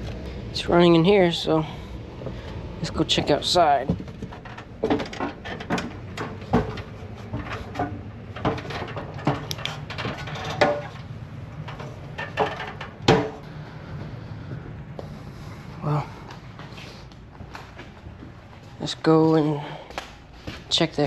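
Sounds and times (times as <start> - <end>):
steady low hum: 0.0 - 21.0
footsteps: 11.7 - 21.0.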